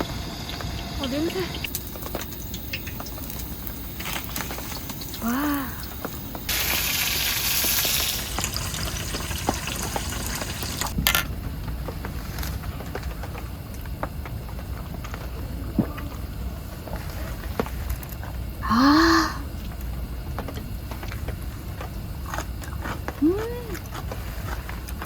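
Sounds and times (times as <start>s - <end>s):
pancake sizzling in oil: 0.0s - 11.0s
oil crackling and popping: 0.0s - 16.0s.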